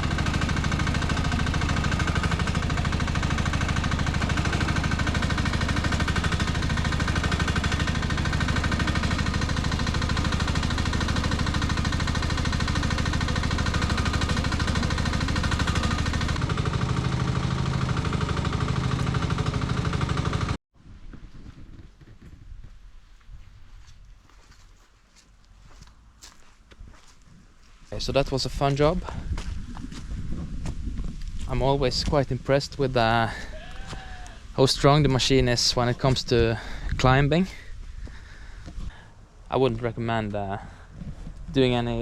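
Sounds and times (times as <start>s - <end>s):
mini excavator engine running: 0.0s - 20.6s.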